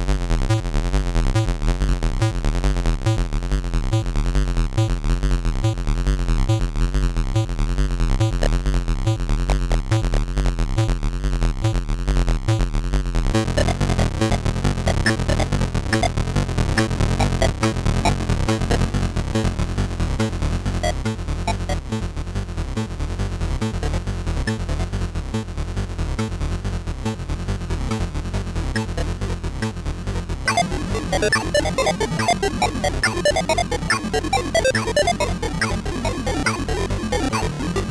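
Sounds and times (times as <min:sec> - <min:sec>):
synthesizer sequenced pattern: 0:13.4 - 0:19.4, 0:20.8 - 0:21.9, 0:28.8 - 0:29.2, 0:30.5 - 0:37.9
heavy synth bass line: 0:13.4 - 0:21.9, 0:28.8 - 0:37.9.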